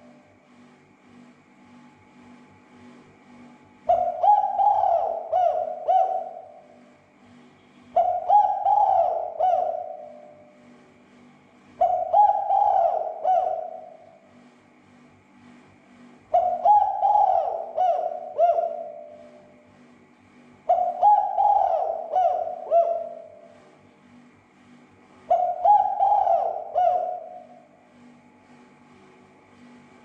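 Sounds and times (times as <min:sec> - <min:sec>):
dove cooing: 0:03.9 - 0:07.0, 0:07.9 - 0:10.7, 0:11.8 - 0:14.4, 0:16.3 - 0:19.7, 0:20.6 - 0:23.8, 0:25.3 - 0:27.8.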